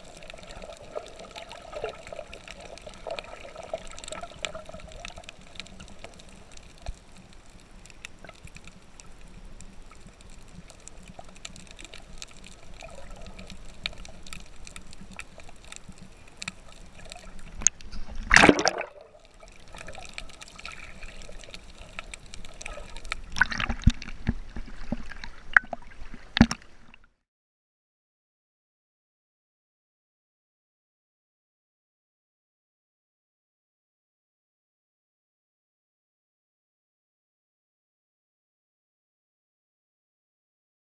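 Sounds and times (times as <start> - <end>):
water splashing: 0.0 - 27.1
water trickling and gurgling: 0.0 - 27.1
water rushing: 16.6 - 26.9.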